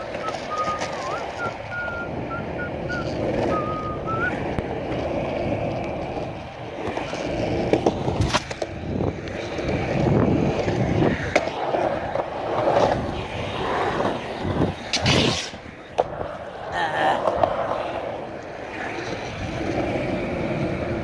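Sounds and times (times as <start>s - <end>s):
thin wavering whistle: 0.0s - 4.5s
skateboard clacks: 0.0s - 21.0s
skateboard wheels rolling on pavement: 0.0s - 21.0s.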